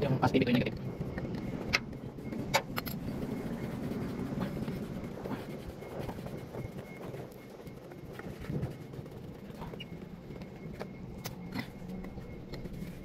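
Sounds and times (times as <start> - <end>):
steady low rumble: 0.0 - 13.0
hand tools clicking and tapping: 0.4 - 3.3.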